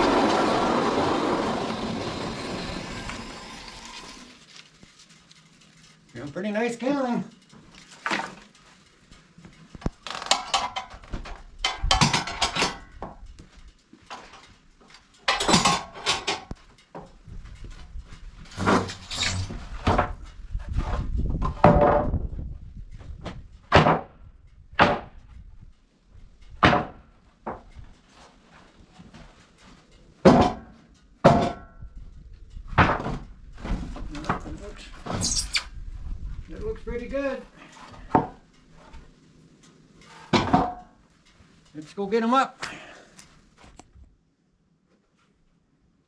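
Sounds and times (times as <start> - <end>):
wooden boards knocking and clattering: 10.3 - 13.2, 21.4 - 22.3, 23.3 - 24.1, 24.8 - 25.1, 26.6 - 27.7, 30.2 - 31.7, 32.7 - 34.5, 38.0 - 38.4, 40.3 - 40.9.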